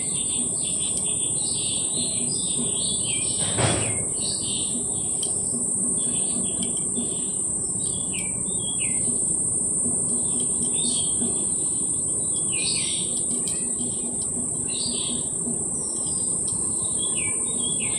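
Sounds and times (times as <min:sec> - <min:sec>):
birds chirping: 0:00.0 - 0:17.9
high-pitched insect drone: 0:00.0 - 0:17.9.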